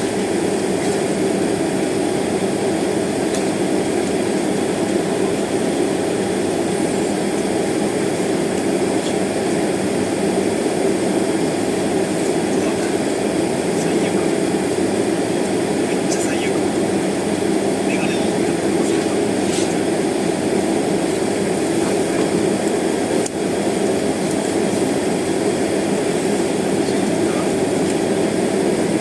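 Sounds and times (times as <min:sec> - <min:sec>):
jet engines at low thrust: 0:00.0 - 0:29.0
cabin air hiss: 0:06.8 - 0:13.2, 0:16.1 - 0:19.1.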